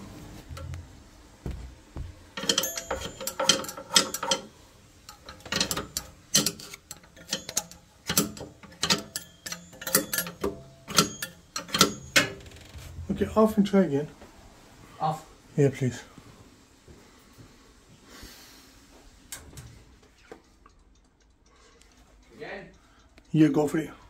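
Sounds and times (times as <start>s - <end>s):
small hard parts clicking: 2.3s - 13.0s, 19.3s - 24.0s.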